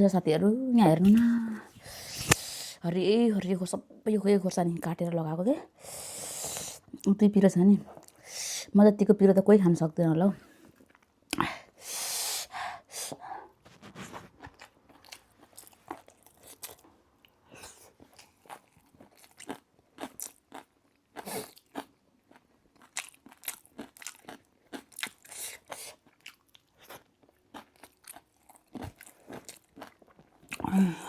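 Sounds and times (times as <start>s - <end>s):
person chewing crunchy food: 13.7s - 16.9s, 17.7s - 30.9s.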